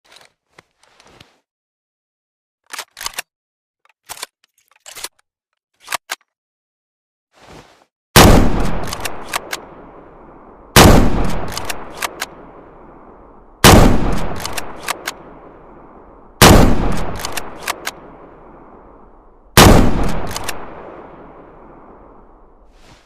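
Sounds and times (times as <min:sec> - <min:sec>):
sharp clicks of rifle bolt: 0:02.6 - 0:03.3, 0:08.6 - 0:09.7, 0:11.2 - 0:12.4, 0:14.1 - 0:15.2, 0:16.9 - 0:18.0, 0:20.0 - 0:20.7
rifle shots with echo: 0:08.2 - 0:22.6.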